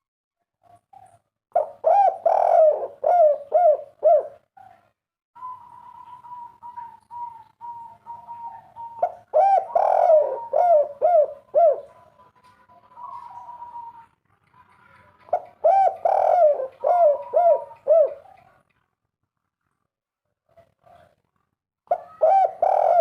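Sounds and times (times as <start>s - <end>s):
dove cooing: 0.6s - 18.6s, 21.9s - 23.0s.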